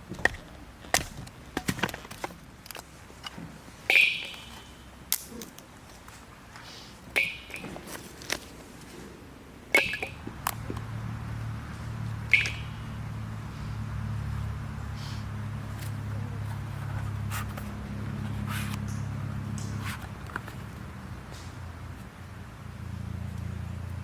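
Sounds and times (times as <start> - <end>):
low steady hum: 0.0 - 24.0
sharp knocks with metallic ring: 3.9 - 4.8, 7.2 - 7.9, 9.7 - 13.1.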